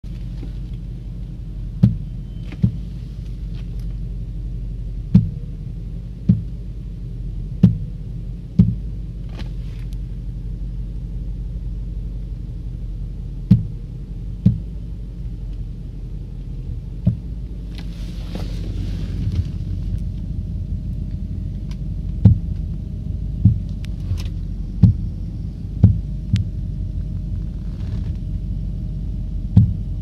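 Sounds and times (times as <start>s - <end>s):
car engine low rumble: 0.0s - 30.0s
sharp engine knocks: 1.7s - 3.0s, 5.0s - 5.6s, 6.2s - 6.7s, 7.6s - 9.5s, 13.4s - 14.8s, 17.0s - 17.9s, 21.5s - 26.6s, 29.5s - 30.0s.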